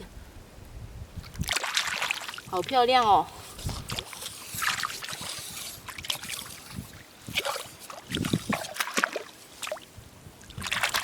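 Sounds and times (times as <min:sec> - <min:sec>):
trickling water: 0:01.2 - 0:11.0
wet squelches: 0:01.2 - 0:11.0
hands digging in wet sand: 0:03.0 - 0:09.7.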